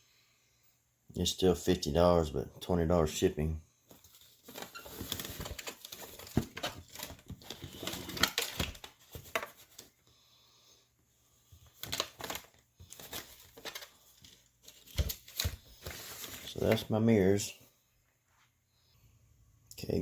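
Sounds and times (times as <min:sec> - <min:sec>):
packaging crinkling: 0:03.9 - 0:09.9, 0:11.7 - 0:16.9.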